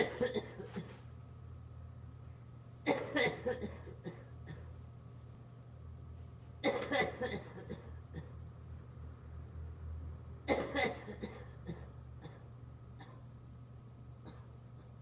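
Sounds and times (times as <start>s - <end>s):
person coughing: 0.0s - 1.1s, 2.8s - 4.8s, 6.6s - 8.4s, 10.5s - 13.2s, 14.2s - 14.6s
steady low hum: 0.0s - 15.0s.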